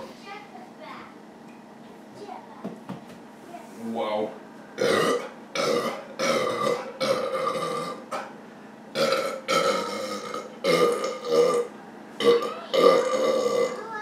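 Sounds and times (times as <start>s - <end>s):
man belching: 4.8s - 8.0s, 8.9s - 13.8s.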